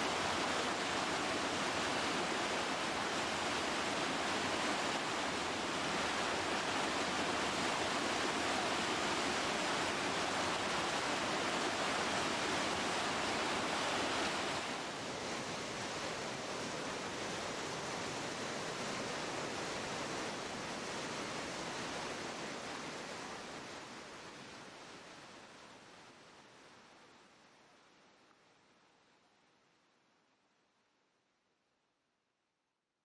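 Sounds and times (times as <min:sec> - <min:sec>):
whitewater rapid rushing: 0:00.0 - 0:24.5.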